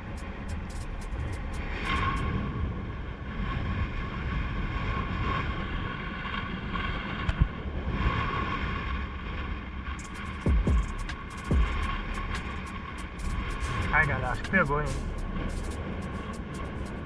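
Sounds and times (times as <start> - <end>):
wind buffeting microphone: 0.0 - 17.0
low thumps: 10.0 - 17.0.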